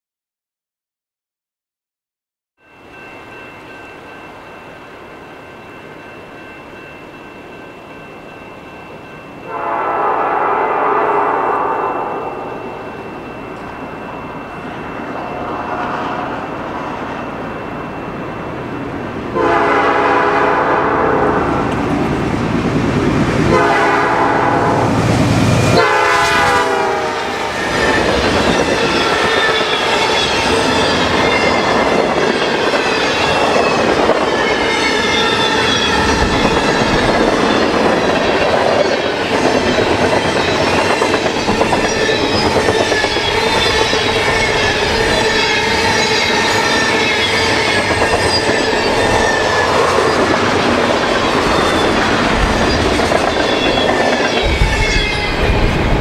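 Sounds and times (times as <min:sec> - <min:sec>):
train horn blasts: 0:09.5 - 0:12.8, 0:19.3 - 0:21.8, 0:23.5 - 0:25.0, 0:25.7 - 0:30.6
wheels clacking over rail joints: 0:27.5 - 0:56.0.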